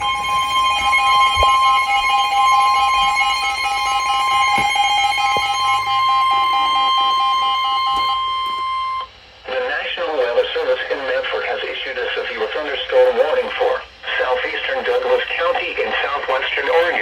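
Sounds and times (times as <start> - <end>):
rapid electronic beeping: 0.0 - 9.1
loud steady electronic tone: 0.0 - 17.0.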